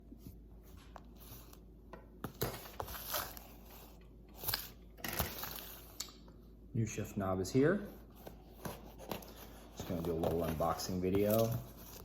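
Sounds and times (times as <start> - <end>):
packaging crinkling and scraping: 8.8 - 12.0.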